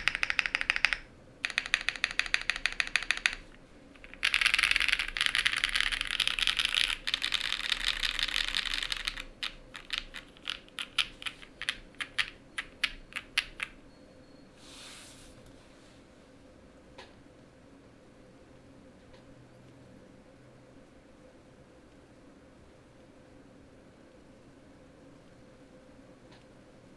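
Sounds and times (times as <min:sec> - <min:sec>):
mechanical keyboard typing: 0:00.0 - 0:13.8.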